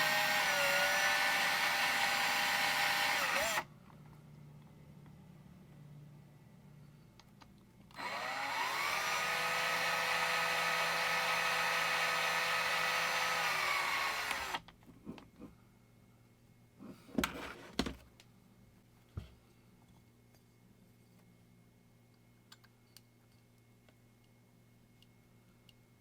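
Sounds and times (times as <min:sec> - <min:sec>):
electric drill running: 0:00.0 - 0:03.6, 0:08.0 - 0:14.6.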